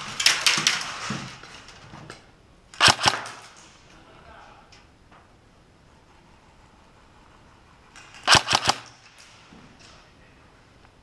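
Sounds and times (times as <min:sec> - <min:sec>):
airsoft gun shots: 0:02.8 - 0:03.6, 0:08.2 - 0:09.0.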